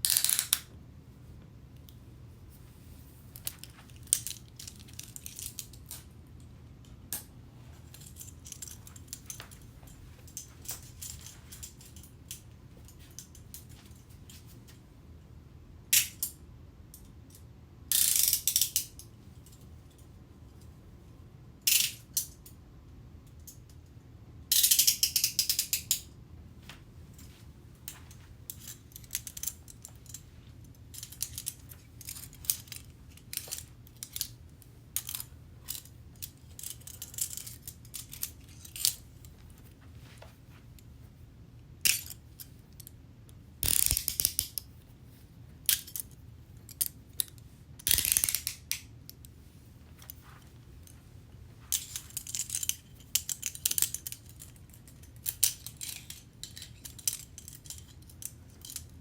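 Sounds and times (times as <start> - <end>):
handcuffs ratcheting: 0.0 - 0.7, 7.9 - 9.6, 17.9 - 19.6, 24.5 - 26.1, 27.9 - 30.2, 30.9 - 39.1, 41.8 - 42.9, 43.6 - 44.7, 45.7 - 49.2, 51.7 - 58.9.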